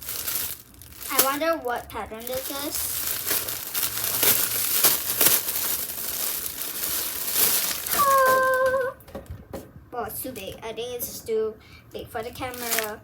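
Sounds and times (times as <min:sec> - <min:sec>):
plastic packaging crinkling: 0:00.0 - 0:09.6, 0:12.2 - 0:13.0
person holding a sung note: 0:07.9 - 0:09.0.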